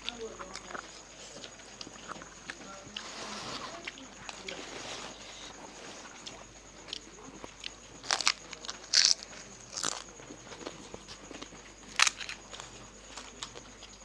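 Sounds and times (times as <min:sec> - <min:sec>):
crisp shells crunching while chewed: 0:06.2 - 0:14.0.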